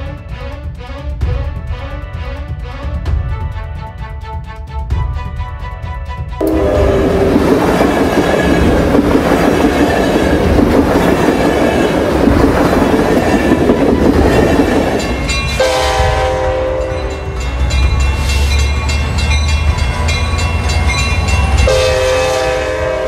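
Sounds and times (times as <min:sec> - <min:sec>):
train horn chord: 0:00.0 - 0:09.0, 0:15.1 - 0:17.6, 0:21.4 - 0:23.0
train wheels rumbling on rails: 0:00.0 - 0:23.0.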